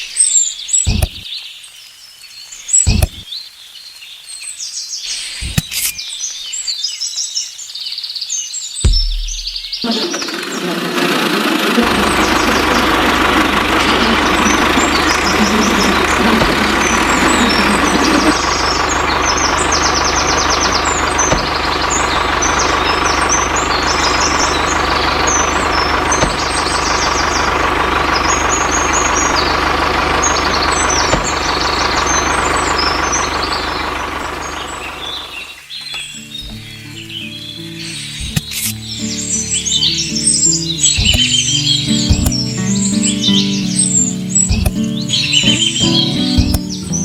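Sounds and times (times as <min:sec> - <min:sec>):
birds chirping: 0:00.0 - 0:47.0
motor humming loudly: 0:00.9 - 0:01.2, 0:02.9 - 0:03.2, 0:08.9 - 0:35.5, 0:36.4 - 0:37.0, 0:38.2 - 0:47.0.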